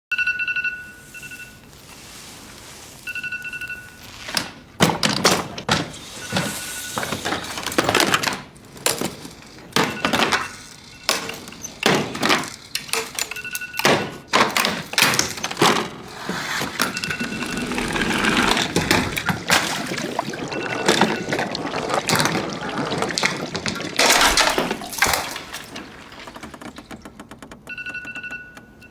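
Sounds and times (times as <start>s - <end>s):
phone alarm beeping: 0.1s - 4.7s, 6.0s - 7.3s, 9.6s - 11.8s, 12.8s - 14.3s, 16.3s - 23.5s, 27.6s - 28.9s.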